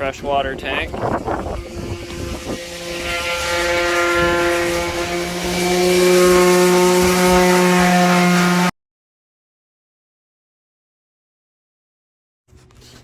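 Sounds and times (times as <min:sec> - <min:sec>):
motor running: 0:00.5 - 0:08.7.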